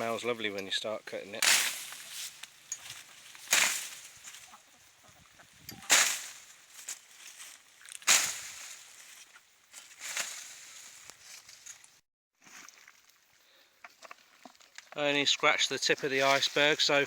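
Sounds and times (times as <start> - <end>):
digging tool chopping into ground: 1.4 - 4.4, 5.7 - 6.5, 7.9 - 8.8.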